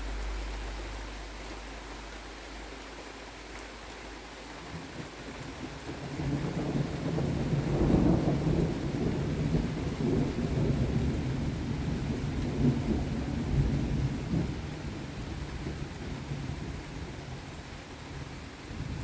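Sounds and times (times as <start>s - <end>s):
rain falling: 0.0s - 19.0s
thunder rumbling: 4.6s - 19.0s.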